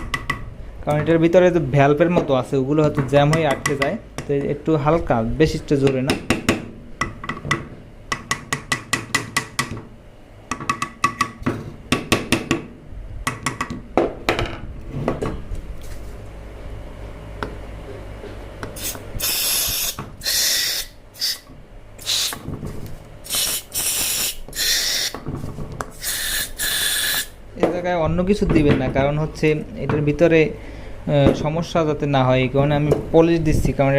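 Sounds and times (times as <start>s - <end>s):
aerosol spray hissing: 18.8s - 21.4s, 22.0s - 22.4s, 23.2s - 25.2s, 26.0s - 27.4s.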